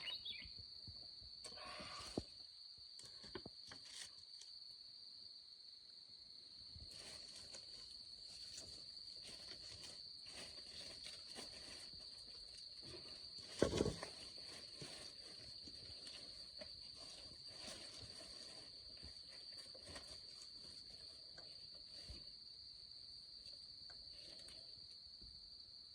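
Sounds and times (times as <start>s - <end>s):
insects high-pitched drone: 0.0s - 2.8s.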